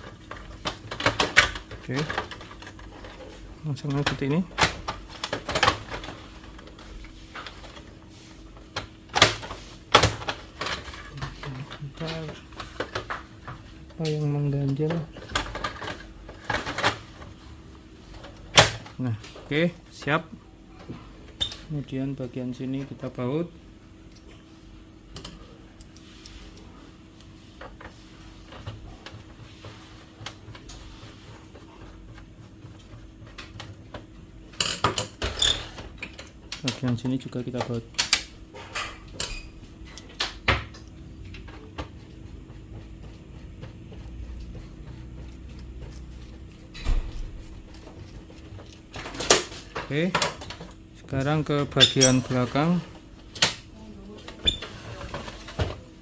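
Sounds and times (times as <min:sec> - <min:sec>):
steady low hum: 0:35.8 - 0:56.0.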